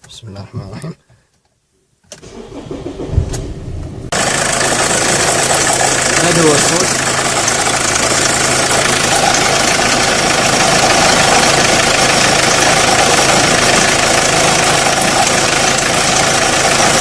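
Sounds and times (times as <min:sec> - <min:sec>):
diesel engine idling with shaking: 0:04.0 - 0:17.0.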